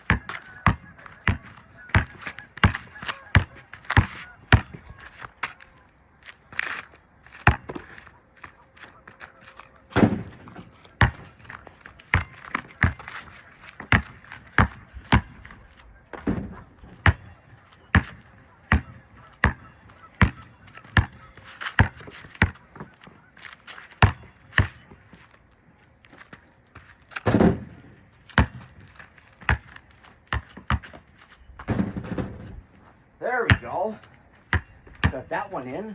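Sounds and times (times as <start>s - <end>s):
basketball dribbling: 0.0s - 5.0s, 7.4s - 8.1s, 9.9s - 15.6s, 16.2s - 23.2s, 23.8s - 25.0s, 27.3s - 31.1s, 33.5s - 33.7s
geese honking: 0.2s - 5.9s, 7.8s - 25.2s.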